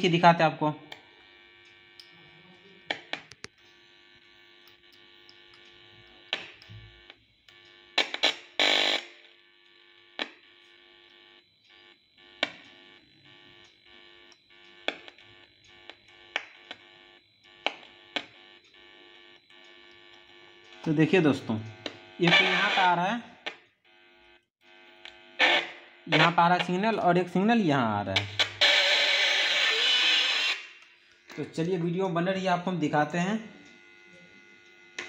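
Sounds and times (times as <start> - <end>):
speaker electrical buzz: 0.0 - 35.0
sharp clicks and crackles: 2.9 - 3.7.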